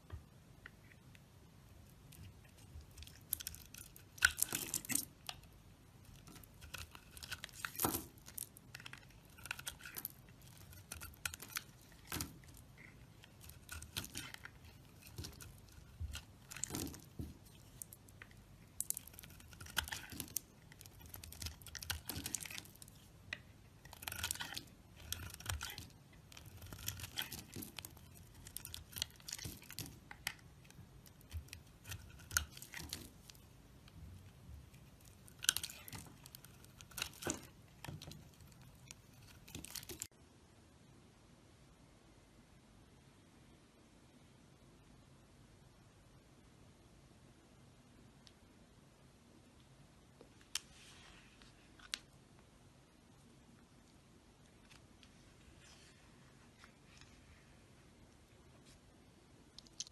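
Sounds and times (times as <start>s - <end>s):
knife carving soap: 0.5s - 40.1s.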